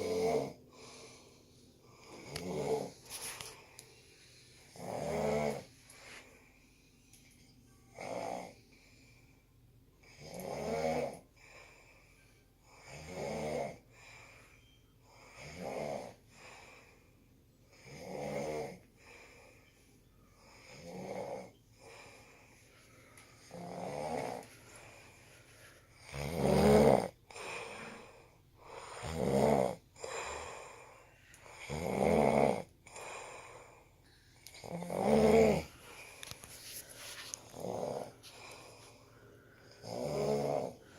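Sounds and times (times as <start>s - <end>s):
rattling snoring: 0.0s - 0.6s, 2.0s - 3.1s, 4.7s - 5.7s, 8.0s - 8.6s, 10.0s - 11.2s, 12.8s - 13.8s, 15.4s - 16.2s, 20.7s - 21.5s, 23.4s - 24.5s, 26.0s - 27.2s, 29.0s - 30.1s, 31.5s - 32.7s, 34.5s - 35.8s, 37.4s - 38.6s, 39.7s - 40.8s
soft breathing: 0.6s - 4.8s, 5.5s - 7.9s, 8.5s - 9.7s, 11.2s - 12.6s, 13.8s - 15.4s, 16.1s - 17.5s, 18.8s - 26.1s, 27.1s - 29.2s, 29.8s - 31.7s, 32.8s - 34.7s, 35.6s - 40.9s.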